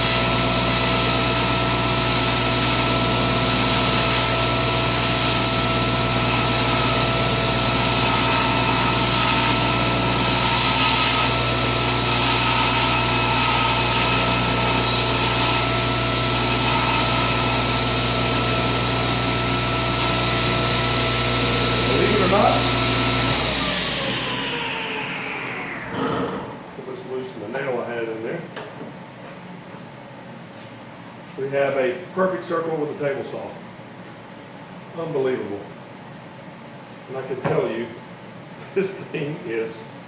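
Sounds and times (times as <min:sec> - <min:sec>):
table saw cutting wood: 0:00.0 - 0:26.7.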